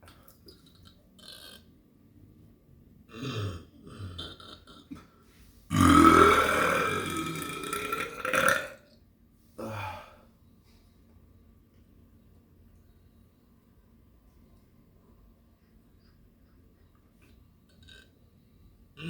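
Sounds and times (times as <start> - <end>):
person burping: 3.1 - 5.1, 5.7 - 8.8.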